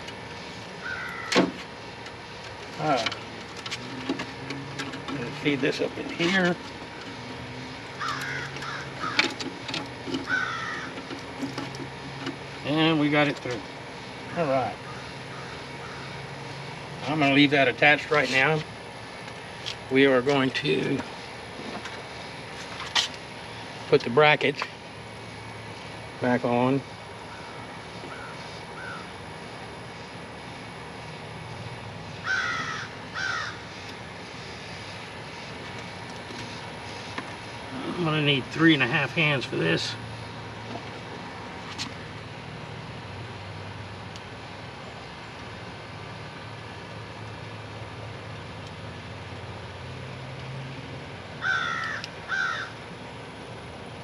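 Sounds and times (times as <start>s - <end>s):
steady low hum: 0.0s - 54.0s
bird cawing: 0.7s - 1.6s, 7.9s - 9.4s, 10.2s - 11.2s, 14.2s - 16.6s, 27.2s - 29.2s, 32.2s - 33.9s, 51.4s - 52.8s.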